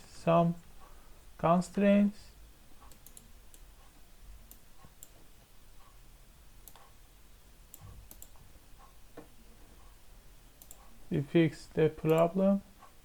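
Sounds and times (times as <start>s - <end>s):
low steady hum: 0.0s - 13.0s
computer mouse clicks: 2.8s - 3.7s, 4.5s - 5.2s, 6.6s - 7.0s, 7.7s - 9.3s, 10.6s - 10.9s.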